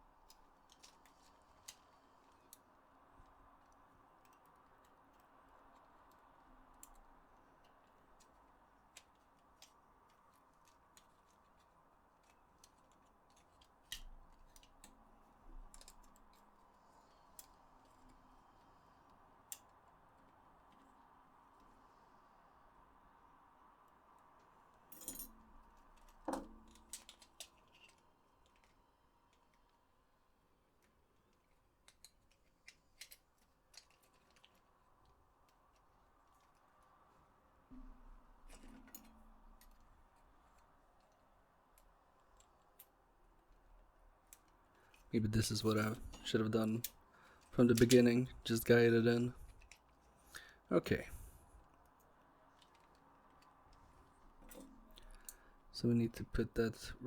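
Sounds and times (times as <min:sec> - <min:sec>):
faint steady hum: 0:00.0 - 0:57.0
plastic parts clicking: 0:26.0 - 0:29.8, 0:30.8 - 0:36.7, 0:46.8 - 0:48.3.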